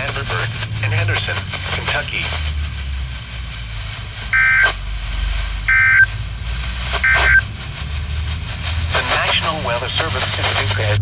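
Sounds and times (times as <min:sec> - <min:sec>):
steady low hum: 0:00.0 - 0:11.0
harsh digital data bursts: 0:04.3 - 0:04.8, 0:05.6 - 0:06.2, 0:06.9 - 0:07.5.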